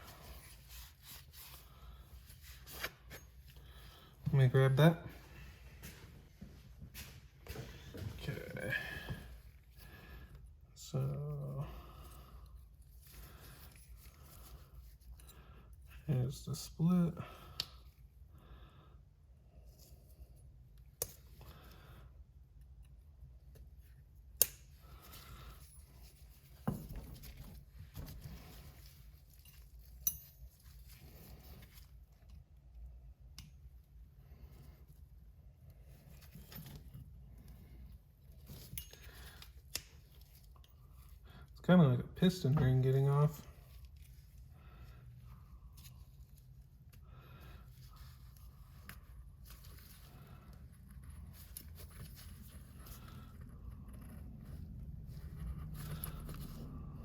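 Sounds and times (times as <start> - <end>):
metal tool clicking and scraping: 29.4 - 30.6, 38.6 - 40.7.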